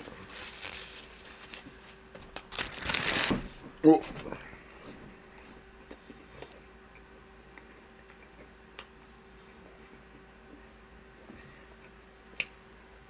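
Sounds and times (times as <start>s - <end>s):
faint chewing: 5.3s - 13.0s.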